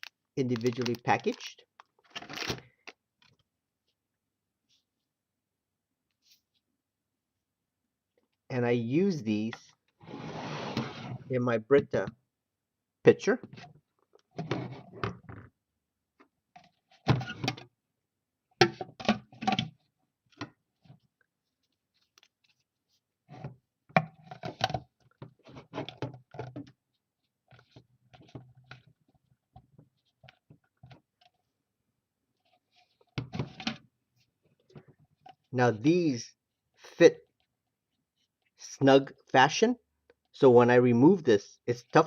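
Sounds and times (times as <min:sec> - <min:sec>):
plastic scraping and clicking: 0:00.5 - 0:03.4.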